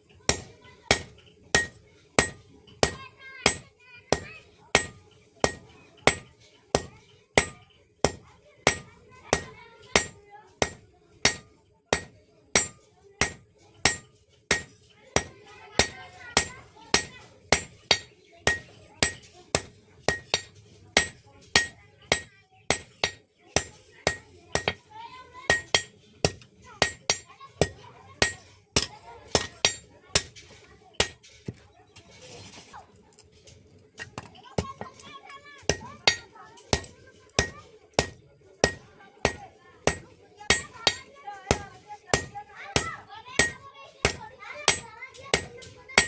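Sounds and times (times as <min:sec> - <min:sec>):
hammer striking steel on anvil: 0:00.3 - 0:24.8, 0:25.5 - 0:30.4, 0:35.6 - 0:46.0.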